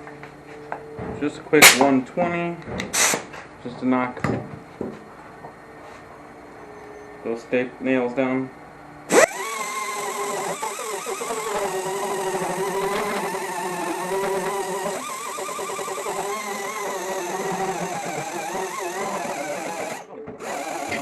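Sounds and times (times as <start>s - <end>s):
power sander running on wood: 9.1s - 21.0s.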